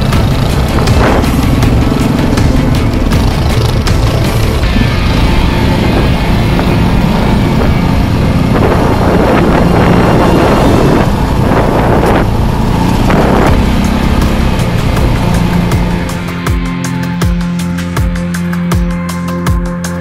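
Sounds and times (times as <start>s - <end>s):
wind rushing over microphone: 0.0s - 2.5s, 4.1s - 16.1s
motorcycle engine running: 0.0s - 20.0s.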